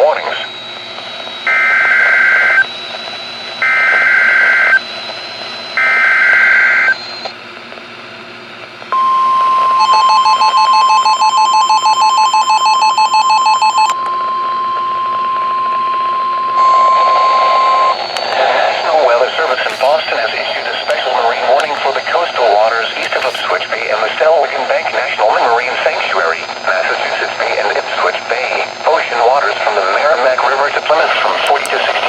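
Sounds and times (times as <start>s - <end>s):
click: 31.4s - 31.8s.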